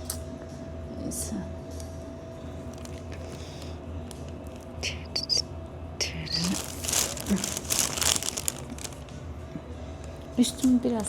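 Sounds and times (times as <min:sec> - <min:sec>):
steady low hum: 0:00.0 - 0:11.0
clothing and paper rustling: 0:02.6 - 0:04.8, 0:06.4 - 0:09.2.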